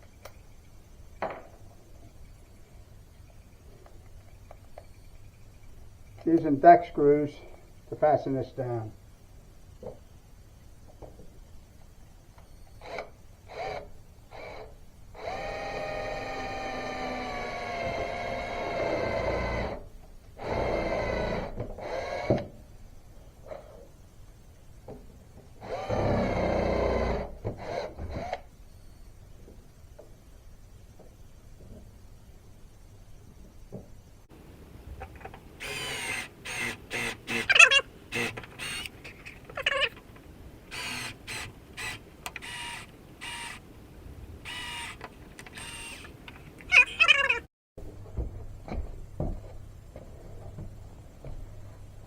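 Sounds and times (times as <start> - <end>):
power drill driving a screw: 15.2 - 19.8, 25.6 - 28.4, 35.6 - 38.9, 40.7 - 43.6, 44.5 - 46.2.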